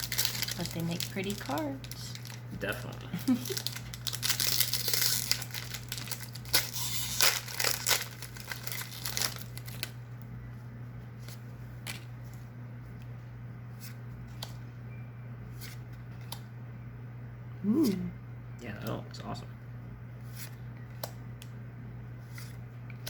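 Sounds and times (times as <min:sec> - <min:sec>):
foil wrapper crinkling and tearing: 0:00.0 - 0:10.0.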